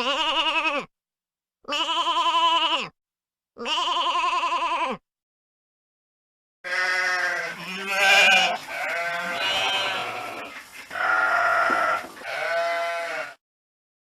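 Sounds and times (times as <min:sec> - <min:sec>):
sheep bleating: 0:00.0 - 0:00.9, 0:01.7 - 0:03.0, 0:03.6 - 0:05.0, 0:06.6 - 0:13.4.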